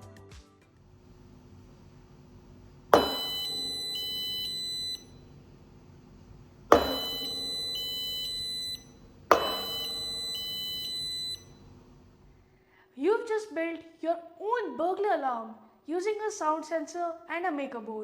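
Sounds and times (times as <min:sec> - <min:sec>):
sharp impact: 0:01.1 - 0:12.4
alarm buzzer alternating beeps: 0:03.0 - 0:05.2, 0:06.7 - 0:11.7.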